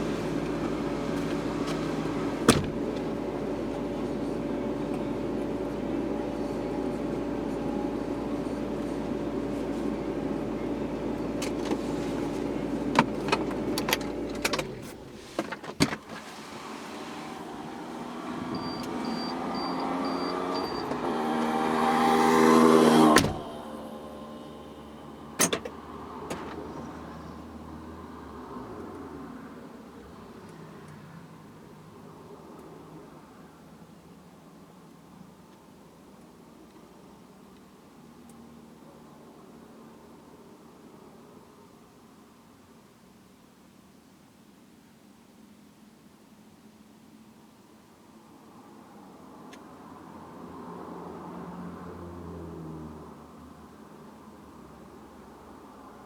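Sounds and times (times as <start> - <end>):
power-window motor whining: 0.0 - 5.9, 7.1 - 27.0
car engine running: 0.0 - 27.7
window clunk: 0.5 - 3.2, 22.4 - 23.6
short high beeps: 18.5 - 20.9.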